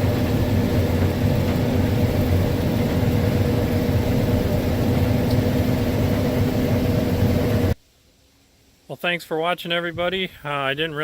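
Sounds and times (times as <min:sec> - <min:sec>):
combine harvester engine drone: 0:00.0 - 0:07.8.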